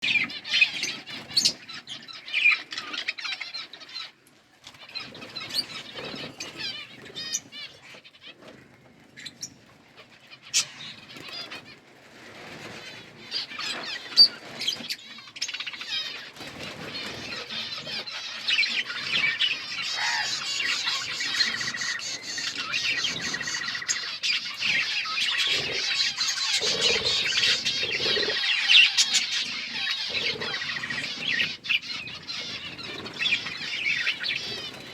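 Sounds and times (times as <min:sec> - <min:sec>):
parrots chirping and chattering: 0:00.0 - 0:11.8, 0:12.5 - 0:34.9.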